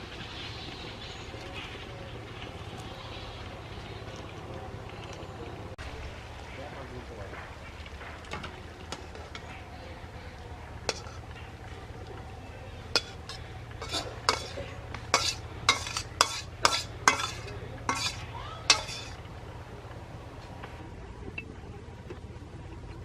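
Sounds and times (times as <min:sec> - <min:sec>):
steady low hum: 0:00.0 - 0:23.0
metal utensil scraping a pot: 0:08.8 - 0:09.7, 0:10.8 - 0:12.1, 0:12.7 - 0:19.3.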